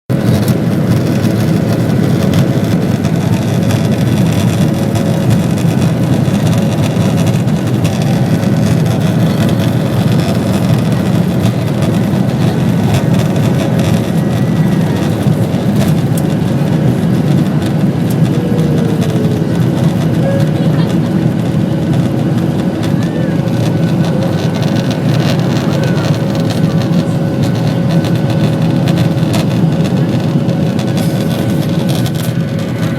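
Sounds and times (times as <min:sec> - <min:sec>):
plane engines droning: 0:00.1 - 0:32.9.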